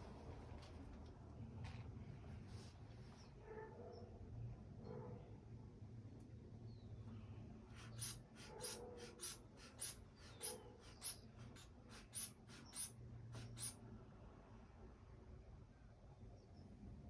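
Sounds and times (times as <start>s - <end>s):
hand bulb pump airy puffs: 7.7s - 13.8s.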